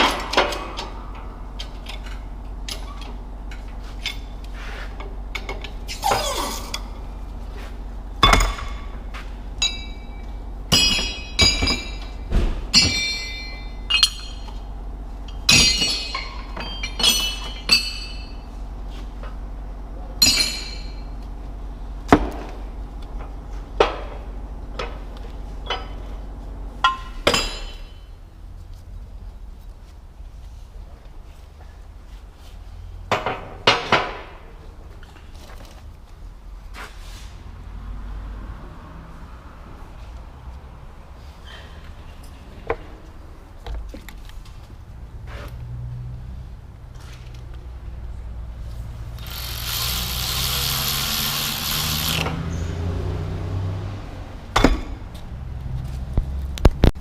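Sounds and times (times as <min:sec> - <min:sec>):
steady low hum: 0:00.0 - 0:37.9
metal tools clinking: 0:09.6 - 0:18.5, 0:20.2 - 0:21.2.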